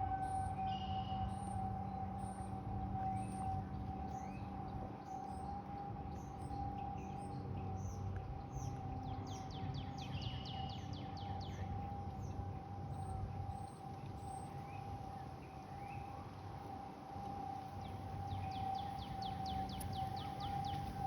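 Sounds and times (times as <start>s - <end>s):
warning siren steady tone: 0.0s - 21.0s
birds chirping: 18.3s - 21.0s.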